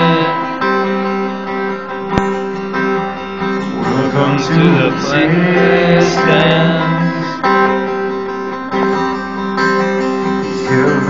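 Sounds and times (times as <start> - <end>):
person singing: 0.0 - 0.7, 3.6 - 8.1, 10.2 - 11.0
acoustic guitar strumming chords: 0.0 - 11.0.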